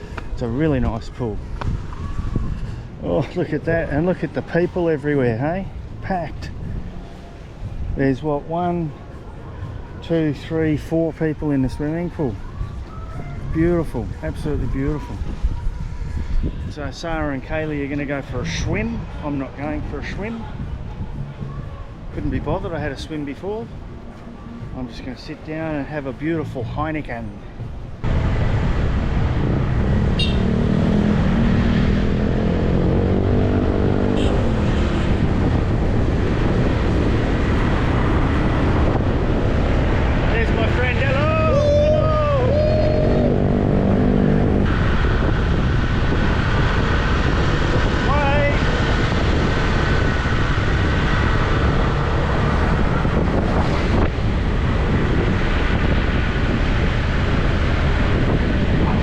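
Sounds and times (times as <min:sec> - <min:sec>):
wind buffeting microphone: 0:00.0 - 0:24.8, 0:26.5 - 0:59.0
road noise: 0:00.0 - 0:59.0
vehicle engine: 0:28.0 - 0:59.0.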